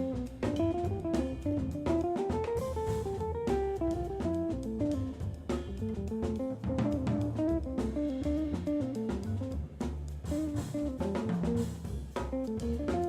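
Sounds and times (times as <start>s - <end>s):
guitar melody: 0.0s - 13.0s
jazz group playing: 0.0s - 13.0s.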